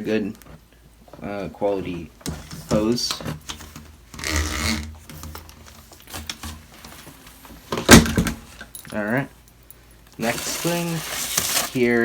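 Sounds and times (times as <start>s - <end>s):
packaging rustling: 10.2s - 12.0s.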